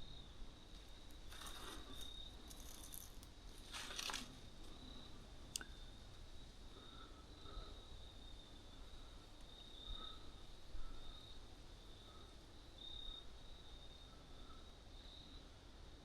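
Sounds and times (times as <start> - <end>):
crickets trilling: 0.0 - 15.5
crunching rustles: 1.1 - 4.8.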